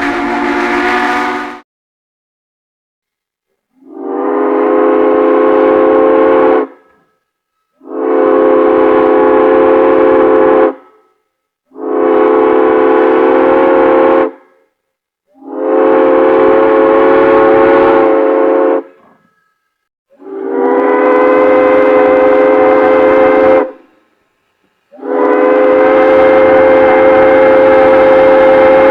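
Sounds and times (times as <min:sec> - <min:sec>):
train whistle chord blasts: 0:00.0 - 0:01.6, 0:03.8 - 0:14.7, 0:15.3 - 0:28.9.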